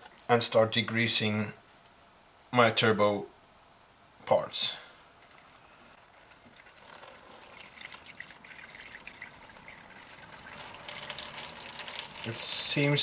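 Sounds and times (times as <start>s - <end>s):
liquid trickling through funnel: 5.2s - 12.8s.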